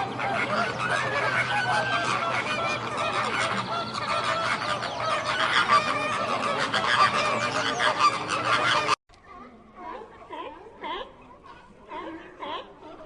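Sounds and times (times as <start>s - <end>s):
flock of birds calling: 0.0s - 9.0s.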